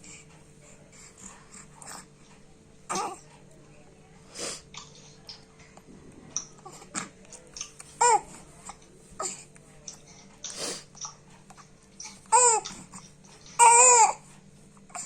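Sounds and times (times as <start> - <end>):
baby coughing: 2.9 - 3.2.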